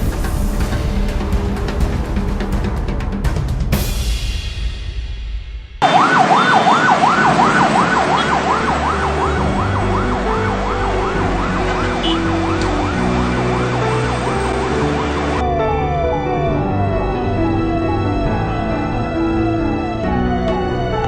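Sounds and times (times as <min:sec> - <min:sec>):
ambulance siren: 0:05.8 - 0:21.0.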